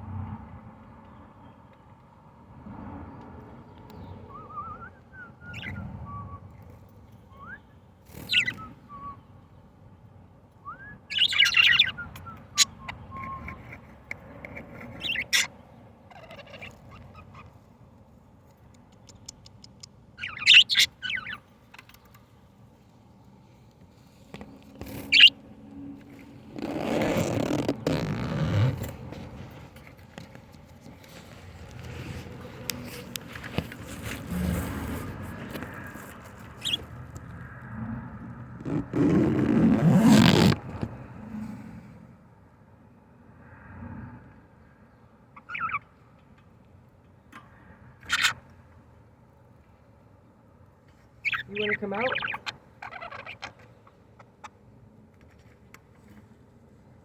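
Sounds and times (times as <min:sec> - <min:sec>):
budgerigars chirping: 0:05.5 - 0:05.8, 0:08.1 - 0:08.7, 0:11.1 - 0:13.8, 0:14.6 - 0:15.5, 0:20.2 - 0:21.4, 0:25.0 - 0:25.3, 0:36.6 - 0:36.9, 0:45.4 - 0:45.8, 0:48.1 - 0:48.4, 0:51.2 - 0:54.3.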